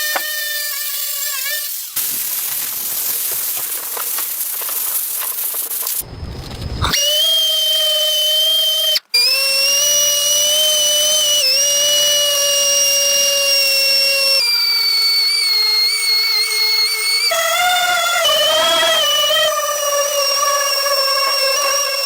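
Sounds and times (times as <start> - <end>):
power tool whining: 0.0 - 2.1, 5.9 - 22.0
loud hiss: 0.0 - 7.2.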